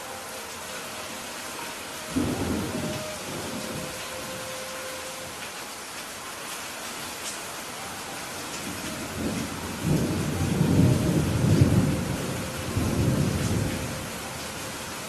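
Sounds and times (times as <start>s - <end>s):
steady rain falling: 0.0s - 15.0s
thunder rumbling: 2.1s - 4.6s, 8.6s - 14.8s.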